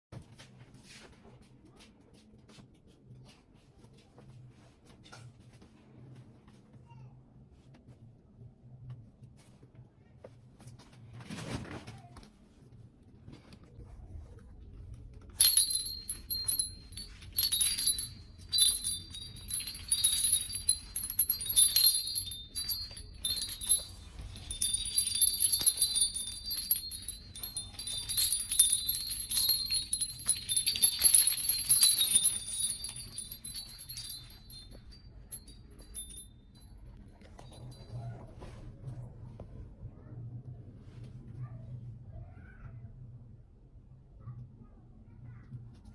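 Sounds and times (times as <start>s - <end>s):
small metal bells jingling: 15.4s - 36.7s.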